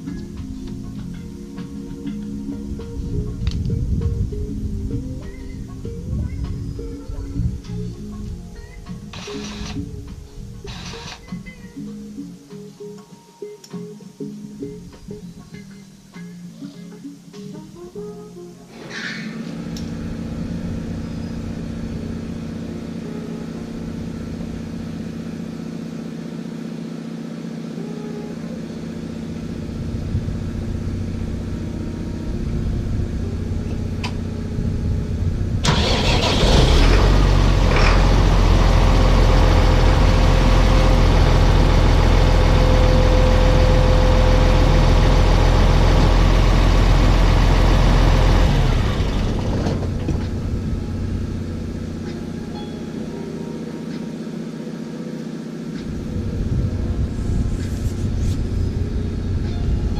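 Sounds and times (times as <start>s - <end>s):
engine running: 0.0s - 12.4s, 18.7s - 59.9s
loud engine roar: 18.8s - 59.9s.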